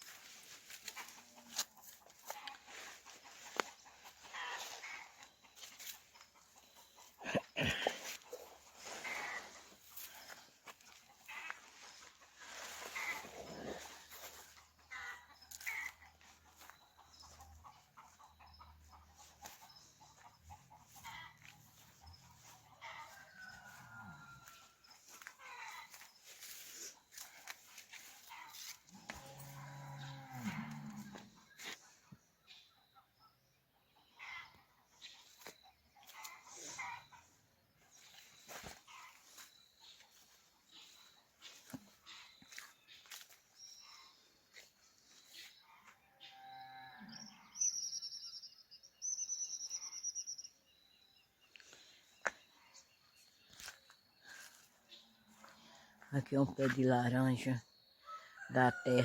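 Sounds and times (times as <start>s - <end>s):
chickens clucking: 0.0s - 32.6s, 33.7s - 46.0s
faint animal calls: 0.9s - 32.0s, 34.1s - 44.2s
rooster crowing: 22.4s - 26.6s, 58.0s - 59.0s.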